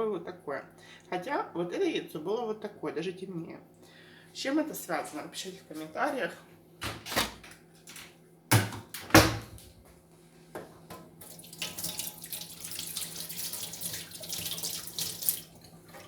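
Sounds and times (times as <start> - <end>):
kitchen tap running: 10.9 - 16.0.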